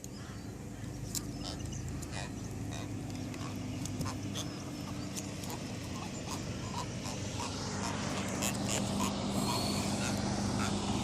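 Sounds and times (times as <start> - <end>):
steady low hum: 0.0 - 11.0
catfish grunting: 5.5 - 11.0.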